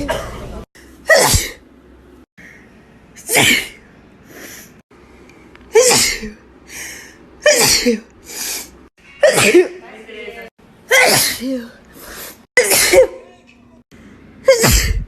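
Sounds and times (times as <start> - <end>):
person sneezing: 1.1 - 1.6, 3.2 - 3.8, 14.5 - 15.0.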